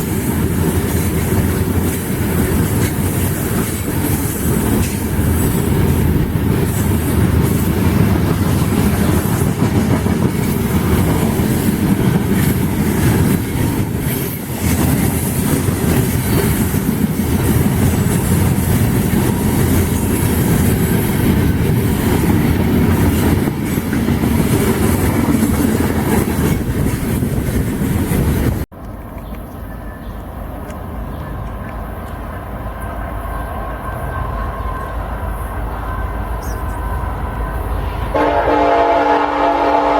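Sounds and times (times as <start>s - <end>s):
wheels clacking over rail joints: 0.0s - 28.9s
freight train cars rumbling: 0.0s - 39.9s.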